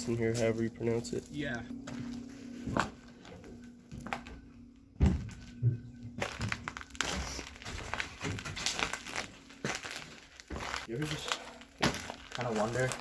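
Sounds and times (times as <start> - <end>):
knocks and crunching debris: 5.0 - 13.0
irregular crackling: 6.2 - 13.0.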